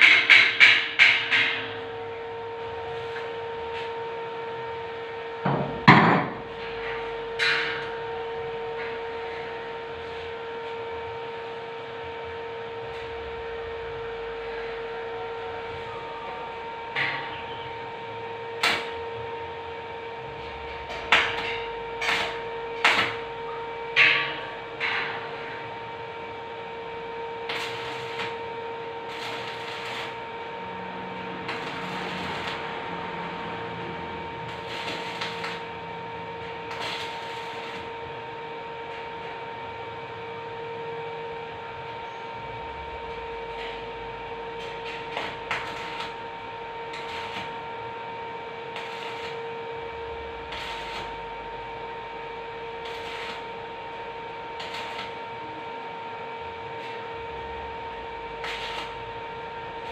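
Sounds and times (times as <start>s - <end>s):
steady hum: 0.0s - 59.9s.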